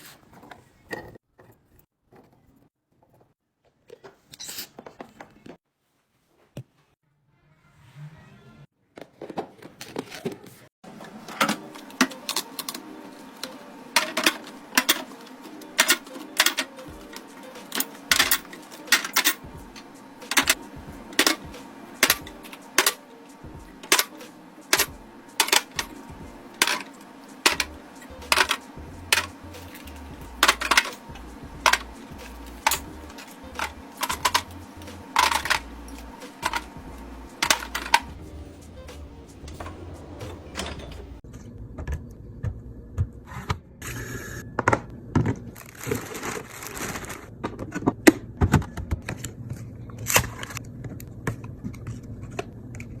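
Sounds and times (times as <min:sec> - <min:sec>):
faint steady hum: 0:11.0 - 0:41.2
jars clinking: 0:11.2 - 0:41.2.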